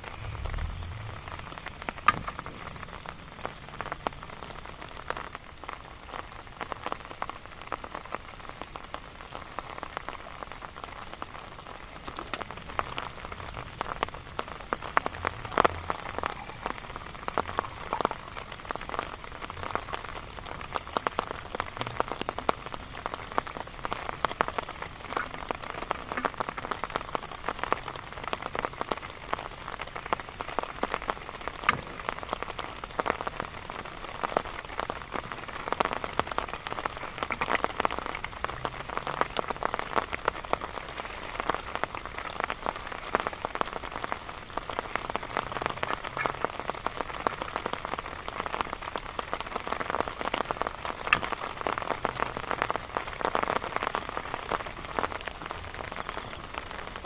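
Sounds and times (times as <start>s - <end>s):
heavy rain falling: 0.0s - 57.0s.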